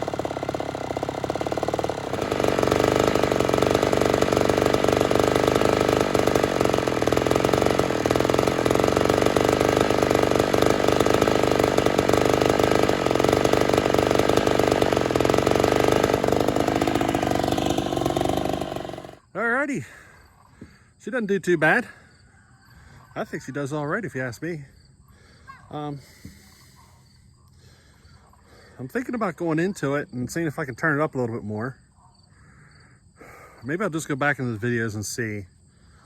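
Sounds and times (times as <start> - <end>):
chainsaw cutting log at full throttle: 0.0 - 19.2.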